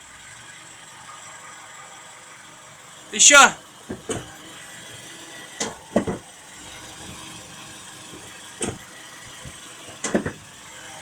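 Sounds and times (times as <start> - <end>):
car driveline knocks: 3.8 - 10.6.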